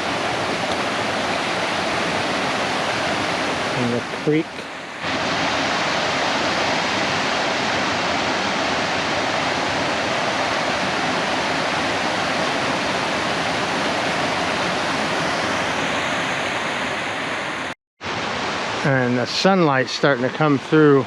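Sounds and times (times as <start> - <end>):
creek running fast over rocks: 0.0 - 16.0.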